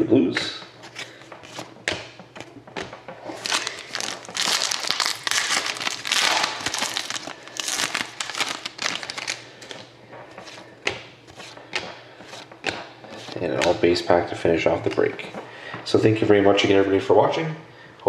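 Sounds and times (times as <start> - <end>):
plastic wrapper crinkling: 3.2 - 9.9.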